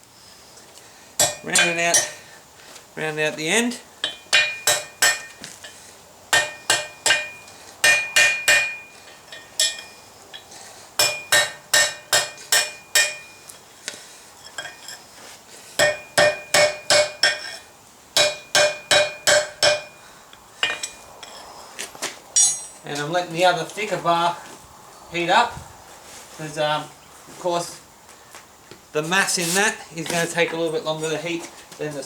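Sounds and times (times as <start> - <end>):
hammer ringing on anvil: 1.2 - 2.2, 4.0 - 5.4, 6.4 - 10.4, 11.0 - 13.4, 15.8 - 17.6, 18.2 - 20.0, 22.4 - 22.8.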